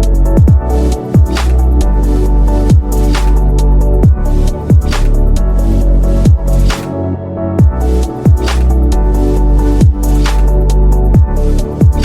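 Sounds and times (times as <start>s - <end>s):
electronic music with heavy bass: 0.0s - 12.0s
deep kick drum hits: 0.4s - 1.4s, 2.7s - 2.9s, 4.0s - 5.0s, 6.3s - 6.5s, 7.6s - 8.5s, 9.8s - 10.0s, 11.1s - 12.0s.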